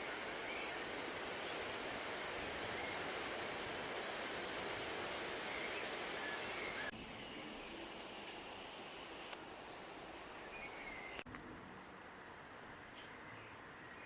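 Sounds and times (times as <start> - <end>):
rushing wind: 0.0 - 11.2
quiet hiss: 0.0 - 14.0.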